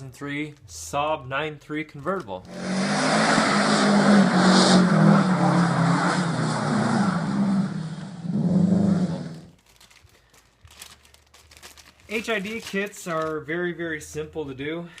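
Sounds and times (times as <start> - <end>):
car engine revving: 2.5 - 9.5.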